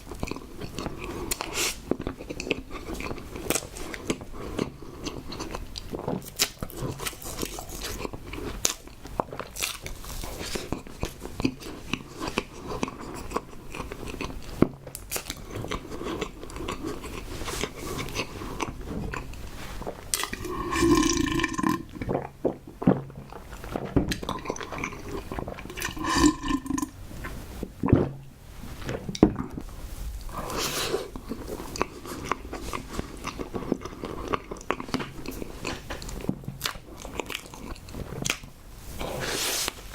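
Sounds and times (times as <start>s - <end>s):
person chewing close to microphone: 0.0s - 39.9s
throaty swallow sound: 20.0s - 22.6s, 23.2s - 27.0s.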